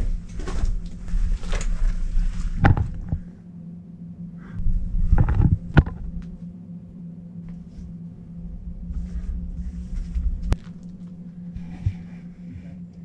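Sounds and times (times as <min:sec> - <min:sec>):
footsteps and gear thumps: 0:00.0 - 0:03.3, 0:05.0 - 0:06.4
steady low hum: 0:00.0 - 0:13.0.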